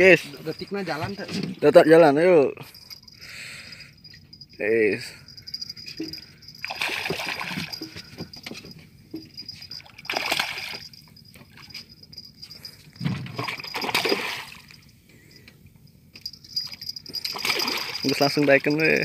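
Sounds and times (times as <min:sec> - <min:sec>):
fish splashing at water surface: 0:06.6 - 0:08.0, 0:09.8 - 0:10.9, 0:13.4 - 0:14.8, 0:17.2 - 0:18.0.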